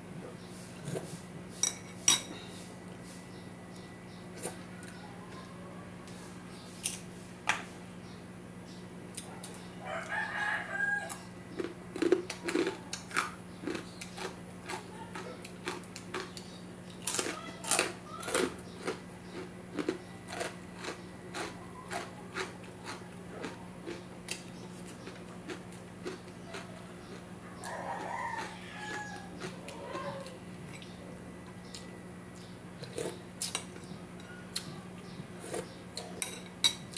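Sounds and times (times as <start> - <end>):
rooster crowing: 4.6 - 6.6, 9.8 - 11.3, 26.7 - 30.4
crunchy food being chewed: 9.1 - 36.9.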